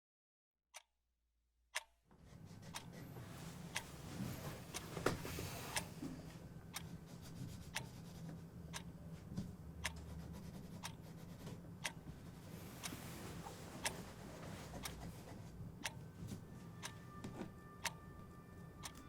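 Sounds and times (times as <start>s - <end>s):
clock ticking: 1.8s - 2.0s, 8.7s - 9.0s, 9.7s - 13.0s, 15.8s - 16.1s, 16.7s - 17.0s, 17.6s - 19.0s
low steady hum: 2.2s - 19.0s.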